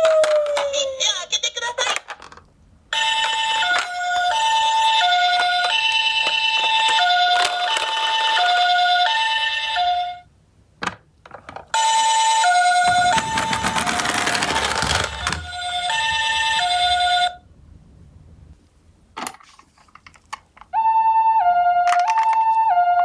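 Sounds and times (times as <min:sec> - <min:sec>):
toy siren two-tone wail: 0:00.0 - 0:01.0, 0:20.8 - 0:23.0.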